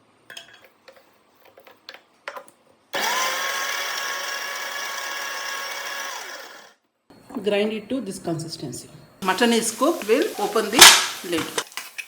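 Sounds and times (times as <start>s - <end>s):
electric mixer grinder whining: 3.0s - 6.7s.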